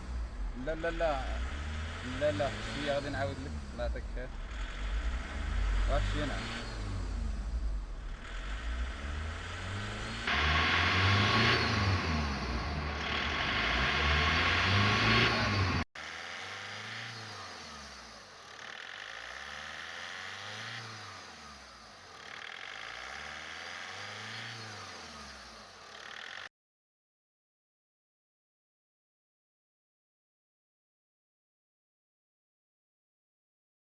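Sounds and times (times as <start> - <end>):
diesel engine revving: 0.0 - 26.5.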